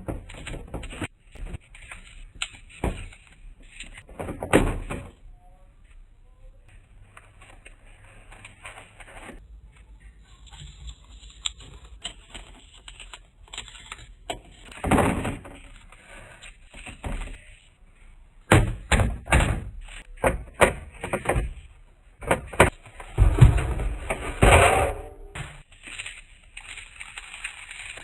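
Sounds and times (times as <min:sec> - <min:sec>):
rustling: 0:25.6 - 0:28.0.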